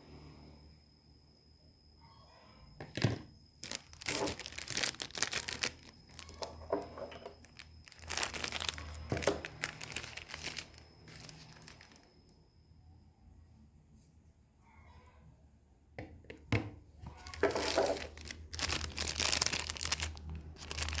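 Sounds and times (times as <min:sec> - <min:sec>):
faint low hum: 0:00.0 - 0:21.0
plastic packaging crinkling and tearing: 0:03.6 - 0:12.1, 0:17.1 - 0:21.0.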